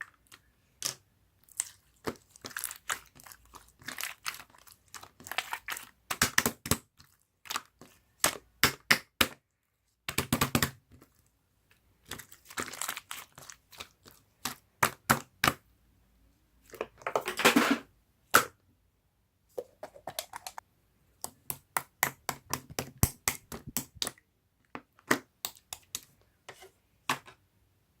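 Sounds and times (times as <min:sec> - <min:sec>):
crisp crackling and crinkling: 0:00.1 - 0:06.0, 0:12.0 - 0:14.7.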